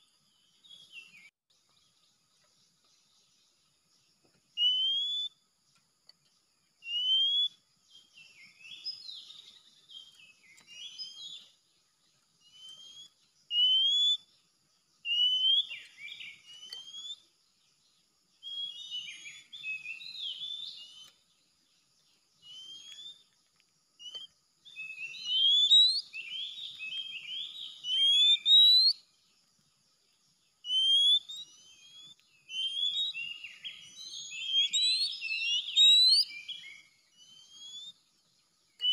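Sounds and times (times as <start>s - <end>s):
songbird singing whistles: 4.5s - 5.4s, 6.8s - 11.6s, 12.4s - 14.3s, 15.0s - 17.3s, 18.4s - 21.2s, 22.4s - 23.3s, 24.0s - 29.2s, 30.6s - 38.1s, 38.7s - 38.9s.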